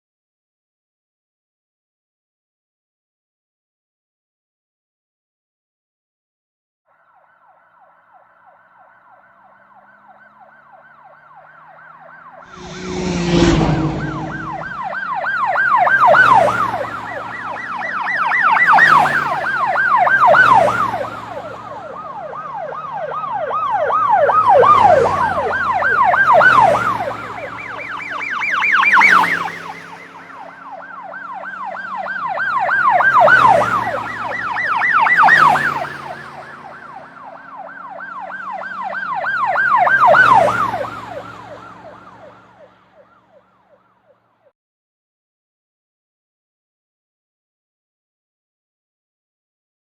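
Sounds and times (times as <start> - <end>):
police sirens yelping: 7.2 - 44.0
vehicle engines: 9.1 - 43.4.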